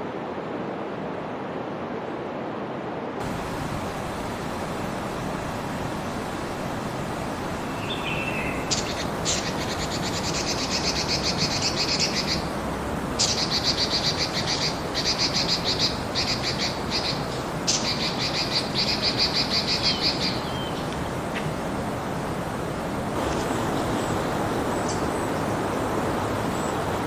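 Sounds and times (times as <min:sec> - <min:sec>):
rain hiss: 0:03.2 - 0:27.0.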